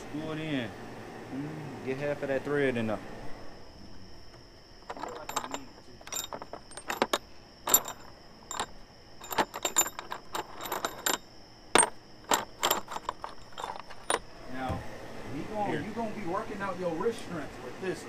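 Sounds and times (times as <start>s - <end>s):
metal tools clinking and clattering: 4.8s - 14.3s.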